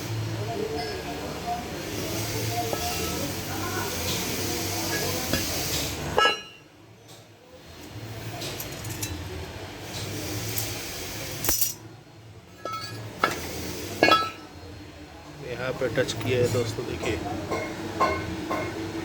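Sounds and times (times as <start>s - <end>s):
metal parts clinking: 8.6s - 9.2s, 11.4s - 11.8s.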